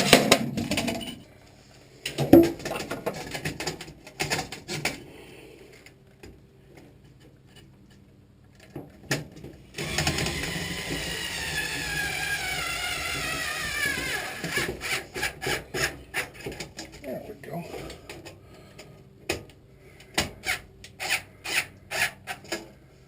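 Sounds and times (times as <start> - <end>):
handling clicks and knocks: 2.1 - 5.0
small electric motor running: 9.8 - 15.6.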